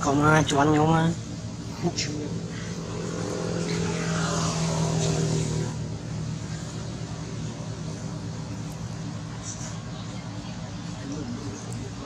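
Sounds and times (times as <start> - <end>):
vehicle engine passing by: 0.0 - 12.0.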